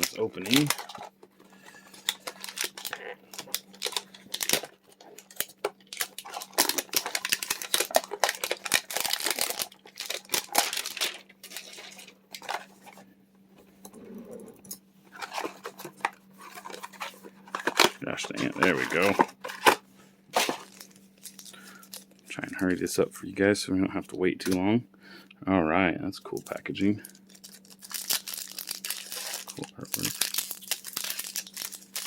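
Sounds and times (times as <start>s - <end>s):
foil wrapper crinkling and tearing: 0.0s - 12.7s, 15.2s - 19.8s, 20.4s - 22.6s, 26.4s - 32.0s
faint electrical hum: 0.0s - 32.0s.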